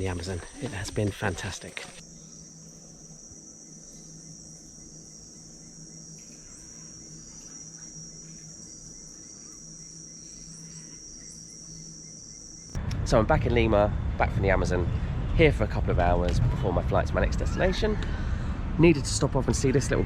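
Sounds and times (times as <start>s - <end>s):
insects droning: 0.0s - 13.8s.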